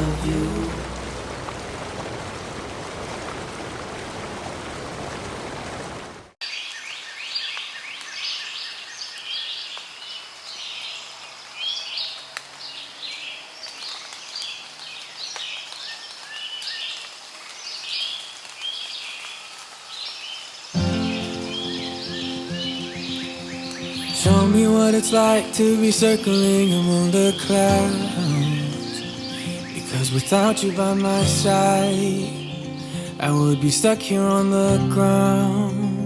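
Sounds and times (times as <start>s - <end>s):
rain hiss: 0.0s - 6.4s, 9.7s - 36.0s
songbirds chirping and trilling: 6.4s - 34.8s.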